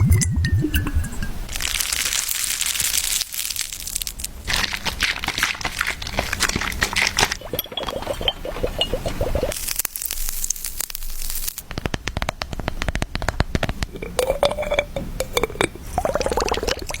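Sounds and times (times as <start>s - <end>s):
crinkling scratchy hiss: 1.5s - 7.5s, 9.5s - 14.2s
taps and clicks: 11.6s - 14.0s.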